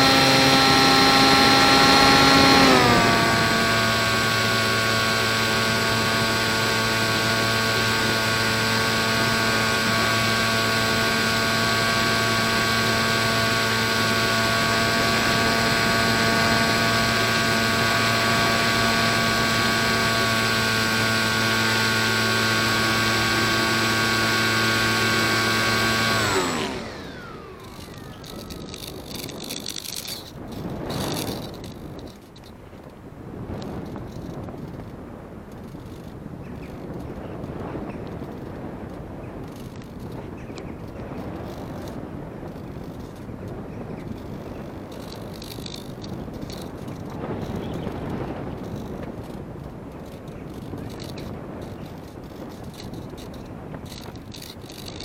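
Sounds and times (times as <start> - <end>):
model plane motor whine: 0.0 - 55.0
faint clicks: 26.4 - 55.0.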